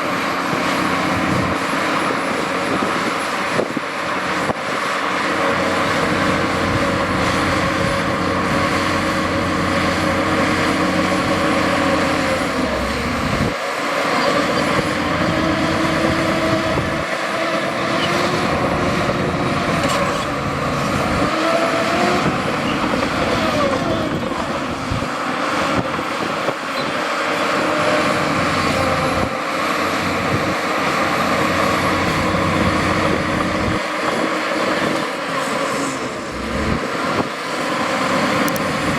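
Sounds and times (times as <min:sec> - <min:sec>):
heavy machinery diesel engines: 0:00.0 - 0:38.9.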